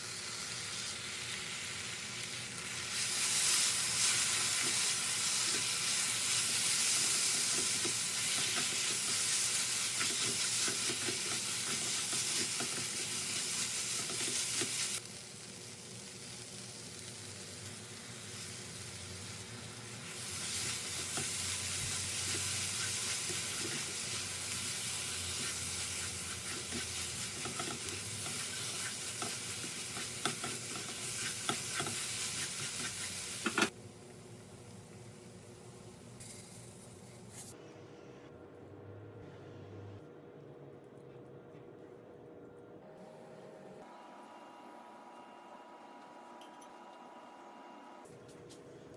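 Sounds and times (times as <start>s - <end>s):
food sizzling in frying pan: 0.0s - 36.7s.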